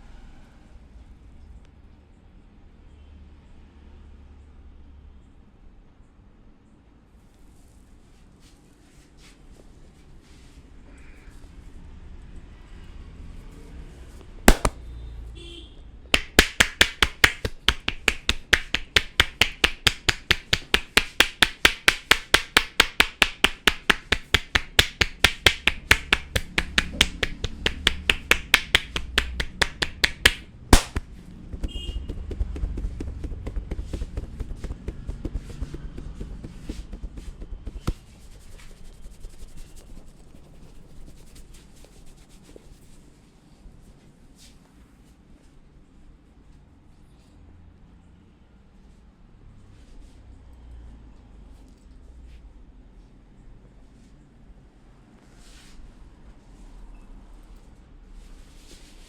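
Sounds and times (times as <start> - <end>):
rubbing on scalp: 16.2 - 43.0.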